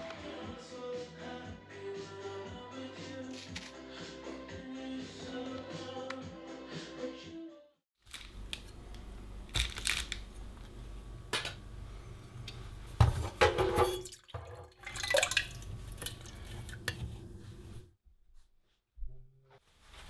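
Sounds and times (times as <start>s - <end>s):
steady low hum: 8.4s - 13.4s.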